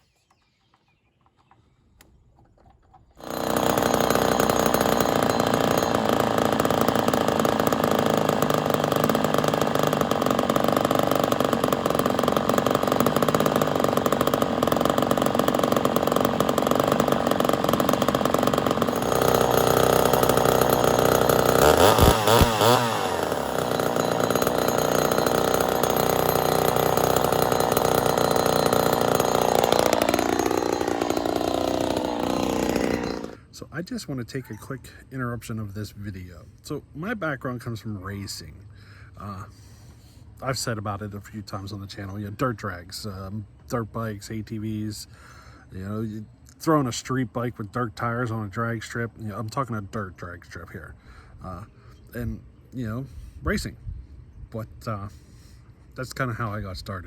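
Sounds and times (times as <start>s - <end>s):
chainsaw running: 3.2s - 33.5s.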